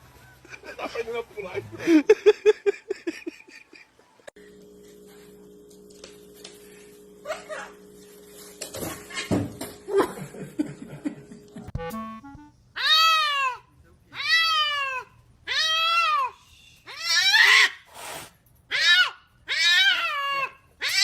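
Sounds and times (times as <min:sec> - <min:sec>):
cat meowing: 0:14.2 - 0:16.3.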